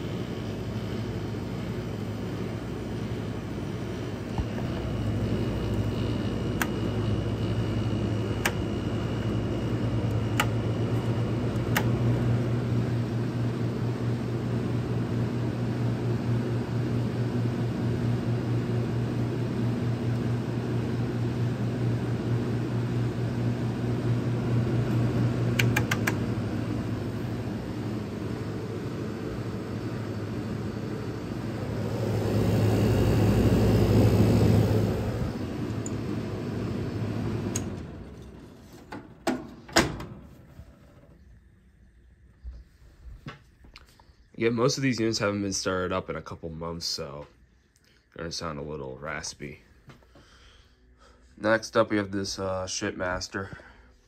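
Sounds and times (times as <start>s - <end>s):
air conditioner humming: 0.0s - 54.0s
sharp clicks: 25.6s - 26.2s.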